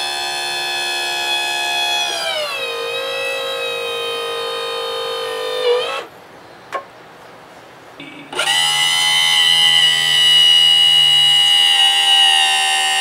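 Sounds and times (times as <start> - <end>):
electric pump motor whining: 0.0 - 6.1, 8.3 - 13.0.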